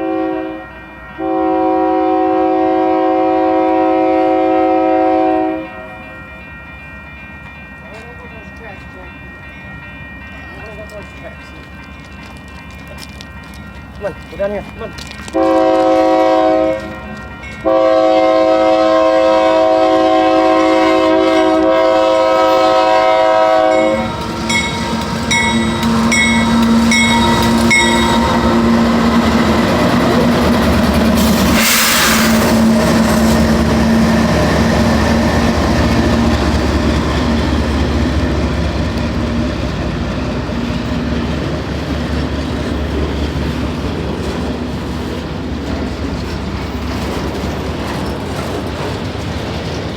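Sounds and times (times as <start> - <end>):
locomotive air horn blasts: 0.0 - 6.0, 15.4 - 25.0
locomotive engine running: 21.6 - 31.6, 32.4 - 49.9
wheels clacking over rail joints: 32.4 - 49.9.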